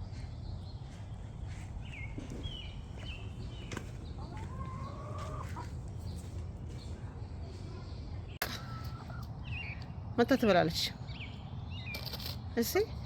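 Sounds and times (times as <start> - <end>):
chickens calling: 0.0 - 7.0, 8.4 - 9.8.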